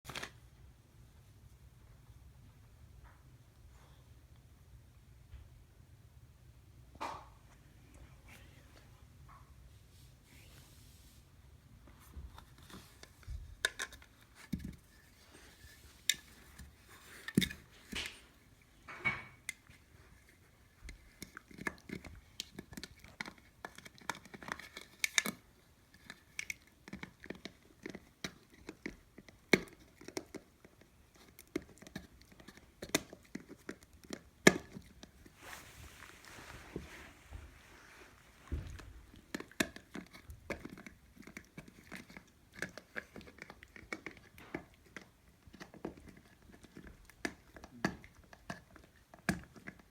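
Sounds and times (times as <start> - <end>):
dog toy crinkling and clicking: 12.4 - 18.4, 19.5 - 35.4, 38.7 - 49.9.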